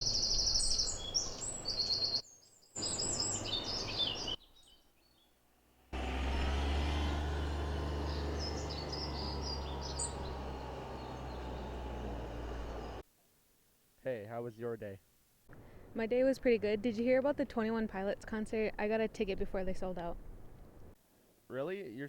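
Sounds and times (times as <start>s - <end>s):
birds chirping: 0.0s - 5.4s, 6.0s - 13.0s
street traffic rumble: 2.8s - 4.4s, 5.6s - 13.0s.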